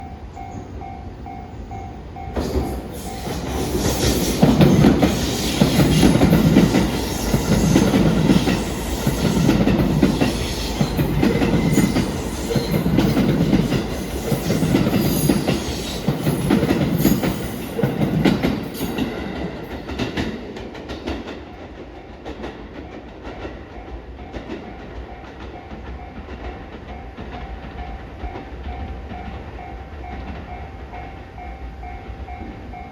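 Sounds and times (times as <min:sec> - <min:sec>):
level crossing warning bell: 0:00.0 - 0:03.4, 0:06.0 - 0:19.7
train wheels clattering over rail joints: 0:02.3 - 0:29.4.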